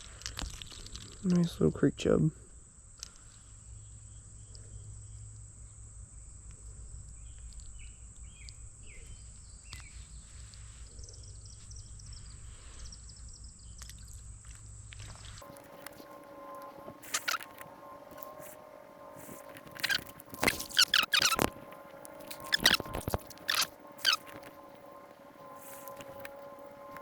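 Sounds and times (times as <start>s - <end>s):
faint clicks: 3.0s - 3.4s
bird chirps: 7.1s - 14.2s, 15.4s - 27.0s
high-pitched whine: 15.2s - 27.0s.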